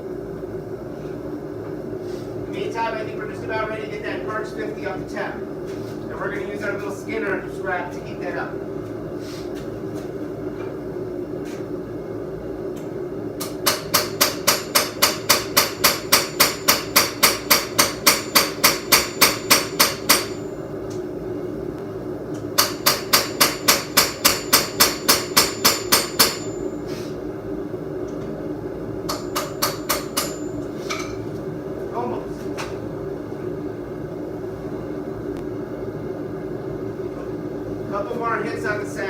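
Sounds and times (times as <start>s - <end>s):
hammer striking steel on anvil: 13.4s - 20.5s, 22.6s - 26.6s, 29.1s - 31.1s.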